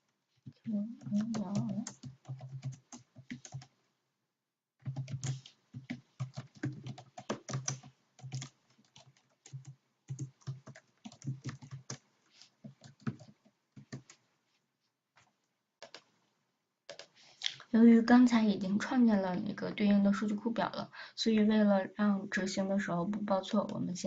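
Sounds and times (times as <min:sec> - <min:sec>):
typing on computer keyboard: 0:00.6 - 0:03.7, 0:04.8 - 0:14.2, 0:15.8 - 0:16.1, 0:16.9 - 0:17.1.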